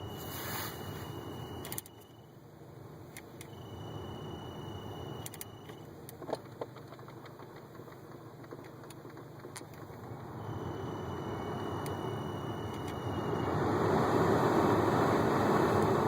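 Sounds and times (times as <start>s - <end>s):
brief tones: 0.0s - 2.3s, 3.4s - 5.9s, 10.4s - 13.5s.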